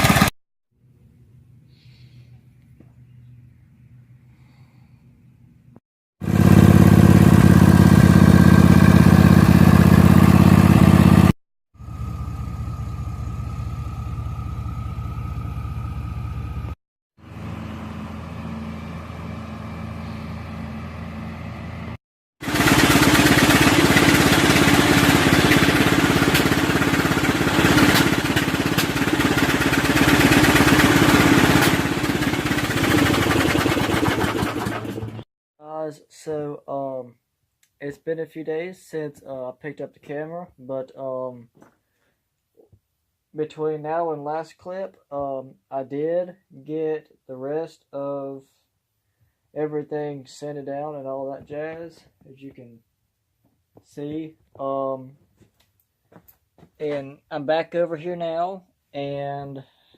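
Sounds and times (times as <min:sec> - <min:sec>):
electric sander running: 0:06.2 - 0:35.2.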